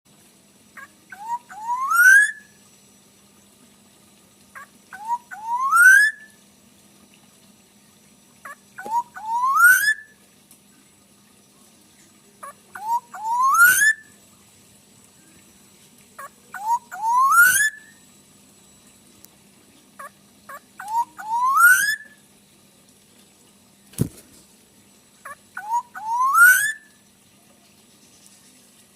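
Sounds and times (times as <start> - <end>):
oriole calling: 0.8 - 2.5, 4.6 - 6.3, 8.4 - 10.1, 12.4 - 14.1, 16.2 - 18.0, 20.0 - 22.2, 25.2 - 26.9.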